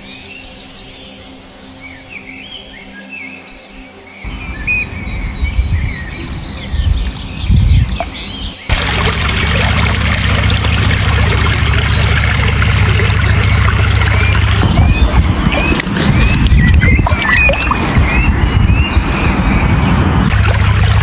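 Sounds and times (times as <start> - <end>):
birds chirping: 4.2 - 21.0
low hum: 4.3 - 21.0
water splashing: 7.0 - 19.0, 20.3 - 21.0
loud rush of water: 7.9 - 18.6, 20.1 - 21.0.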